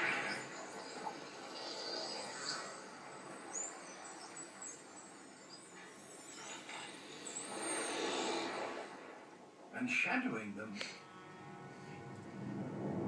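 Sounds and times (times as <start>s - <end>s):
high whistling chirps: 0.0s - 9.5s.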